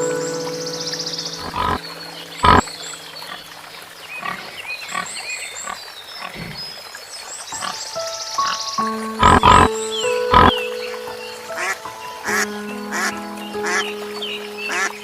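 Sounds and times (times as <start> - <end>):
background music: 0.0 - 3.7, 7.6 - 15.0
birds chirping: 0.0 - 15.0
large animal calling: 1.4 - 1.8, 2.4 - 2.7.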